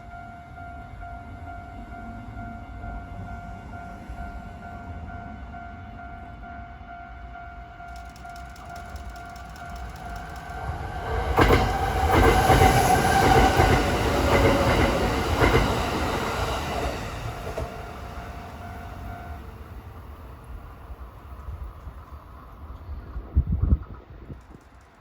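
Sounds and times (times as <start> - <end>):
crossing warning bell ringing: 0.0 - 20.0
electric train passing: 0.0 - 25.0
wheels clacking over rail joints: 7.9 - 18.5.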